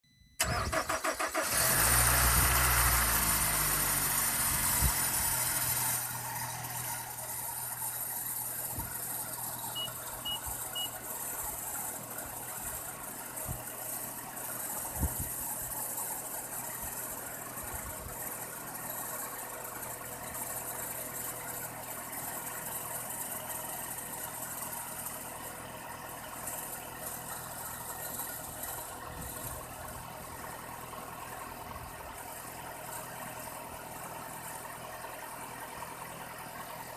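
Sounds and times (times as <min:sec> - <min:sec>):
short faint beeps: 0:00.0 - 0:00.4, 0:09.6 - 0:11.0
car engine idling: 0:00.1 - 0:36.9.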